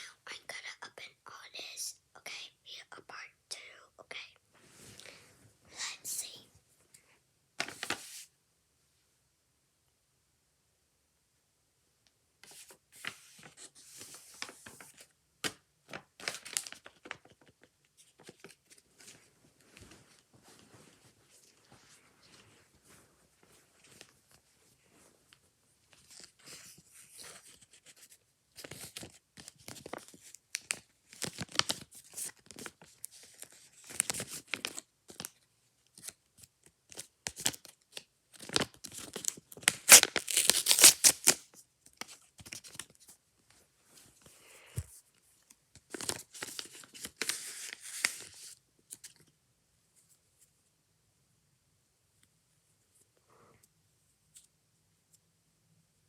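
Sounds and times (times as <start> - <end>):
plastic packaging tearing and crinkling: 38.4 - 41.4.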